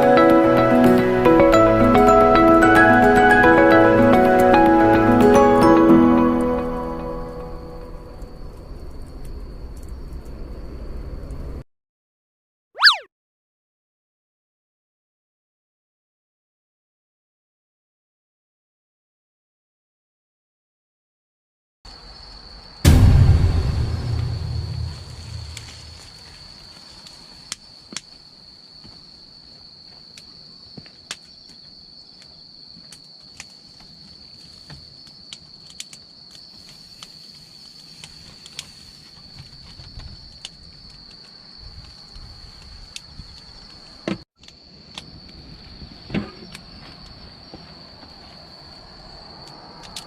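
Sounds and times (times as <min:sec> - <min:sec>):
high insect trill: 0:00.0 - 0:11.2, 0:21.9 - 0:50.0
campfire crackling and popping: 0:24.2 - 0:28.1.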